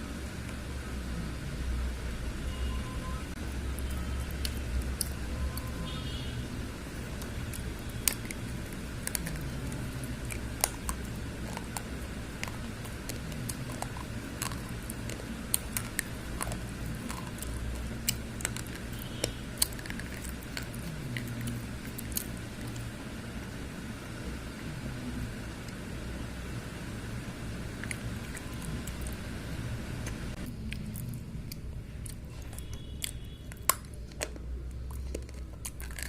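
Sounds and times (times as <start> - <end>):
steady low hum: 0.0 - 36.0
slate pencils crunching: 7.0 - 22.8, 32.2 - 36.0.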